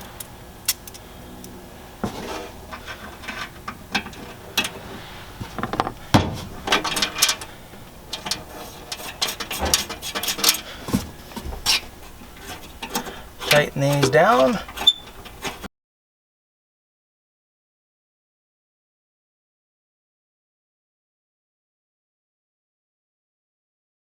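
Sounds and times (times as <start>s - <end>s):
metal parts clattering: 5.4s - 15.6s.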